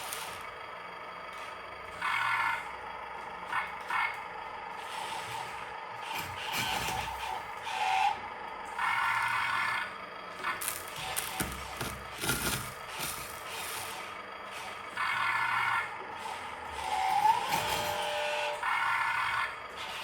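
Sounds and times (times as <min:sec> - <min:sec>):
small electric motors whining: 0:00.0 - 0:20.0
gravel scraping: 0:10.6 - 0:14.0.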